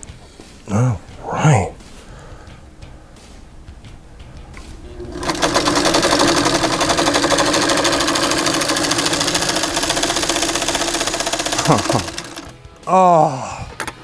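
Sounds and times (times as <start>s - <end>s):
motor hum: 1.8s - 12.8s
sewing machine stitching rattle: 4.7s - 12.6s.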